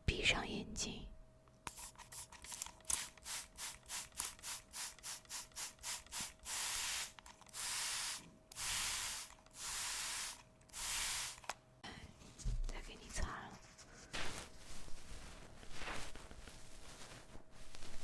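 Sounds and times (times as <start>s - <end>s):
rubbing strokes close to microphone: 12.5s - 18.0s.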